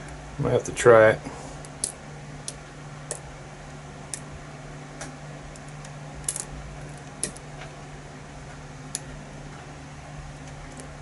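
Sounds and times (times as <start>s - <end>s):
low hum: 0.0s - 11.0s.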